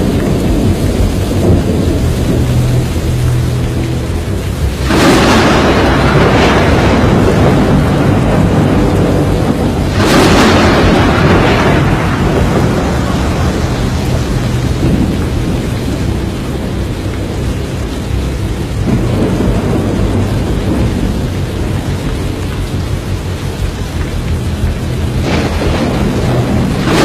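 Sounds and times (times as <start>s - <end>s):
loud thunder crashes: 0.0s - 3.0s, 4.7s - 17.3s, 18.8s - 22.3s, 25.2s - 27.0s
heavy rain: 0.0s - 27.0s.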